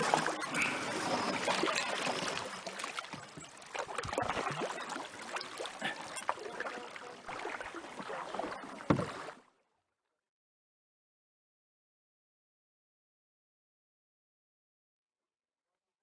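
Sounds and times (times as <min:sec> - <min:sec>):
paddle splashing water: 0:00.0 - 0:09.7.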